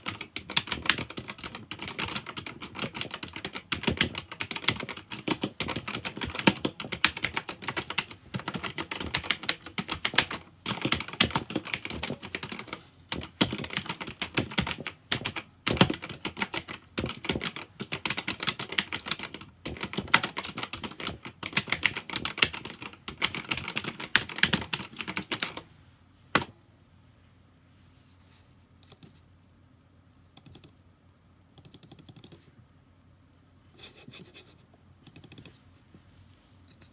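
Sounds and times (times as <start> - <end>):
fast typing on keyboard: 0.0 - 25.6, 30.4 - 30.7, 31.6 - 32.4, 35.0 - 35.6.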